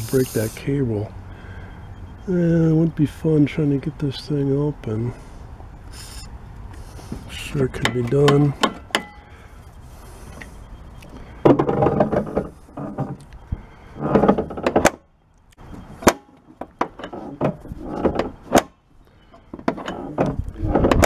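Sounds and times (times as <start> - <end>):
metal scraping and clunking: 5.1 - 21.0.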